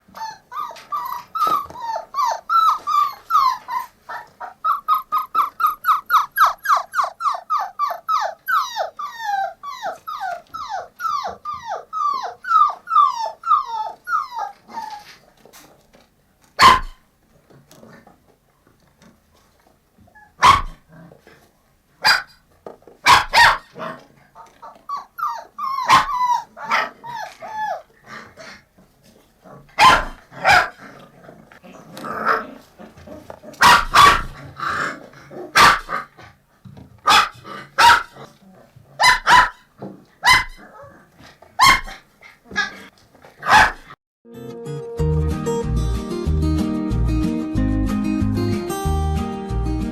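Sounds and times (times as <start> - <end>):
puppies whining: 0.0 - 15.8, 20.1 - 20.7, 23.3 - 28.6
puppy yelps: 0.1 - 15.2, 16.6 - 17.0, 20.1 - 20.8, 22.0 - 22.4, 23.1 - 28.6, 29.8 - 30.8, 33.6 - 34.9, 35.5 - 36.1, 37.1 - 38.3, 39.0 - 41.0, 41.6 - 43.9.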